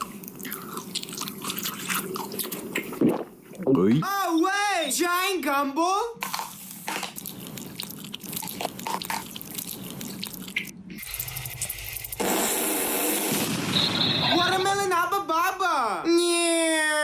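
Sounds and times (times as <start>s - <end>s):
wet clicking and chewing: 0.0s - 3.2s, 6.2s - 12.2s.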